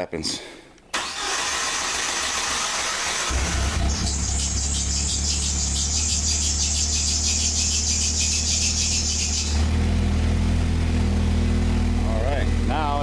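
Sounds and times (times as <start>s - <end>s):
engine cranking by starter: 0.9s - 9.8s
car engine idling: 1.0s - 13.0s.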